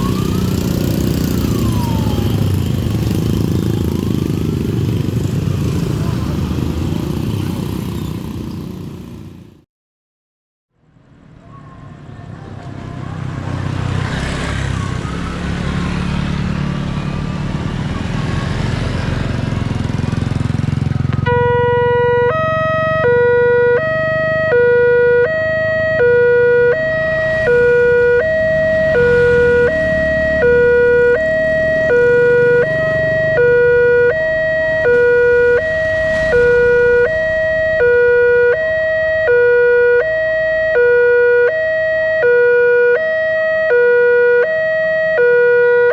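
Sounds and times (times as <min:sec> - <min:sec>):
level crossing two-tone alarm: 0:21.3 - 0:45.9.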